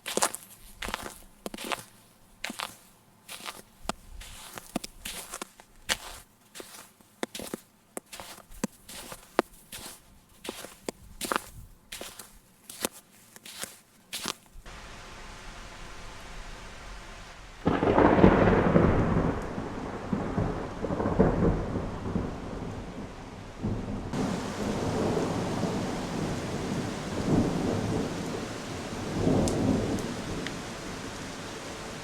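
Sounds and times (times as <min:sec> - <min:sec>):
steady rain: 0:14.7 - 0:32.0
rolling thunder: 0:17.3 - 0:31.1.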